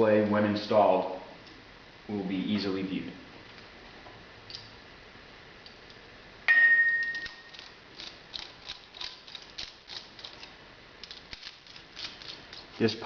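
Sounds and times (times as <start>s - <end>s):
sharp metallic clink: 6.5s - 7.6s.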